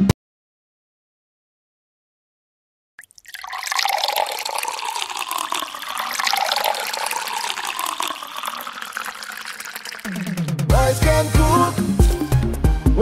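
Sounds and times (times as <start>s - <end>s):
water running from a tap: 3.0s - 10.7s.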